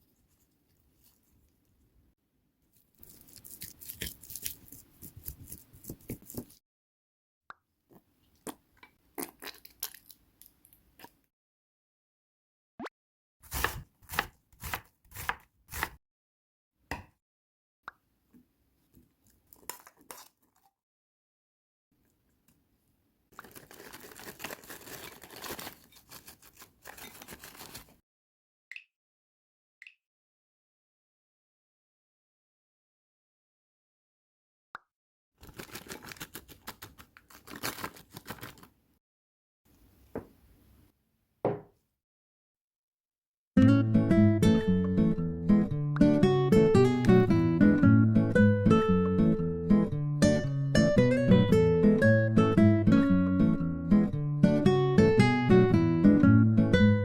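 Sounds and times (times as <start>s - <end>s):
packaging crinkling and crackling: 23.3s - 28.0s, 35.4s - 38.8s
knife tapping on cutting board: 41.4s - 41.7s.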